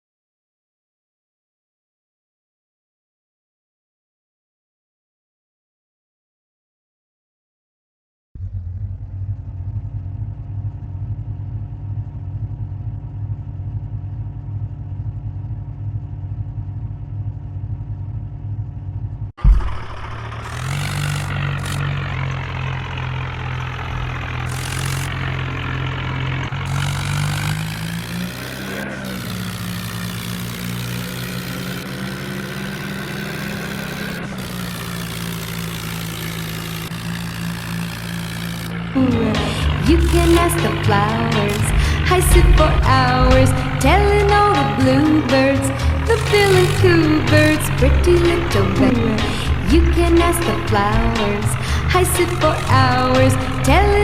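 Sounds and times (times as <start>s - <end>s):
bulldozer diesel engine running: 8.4s - 54.0s.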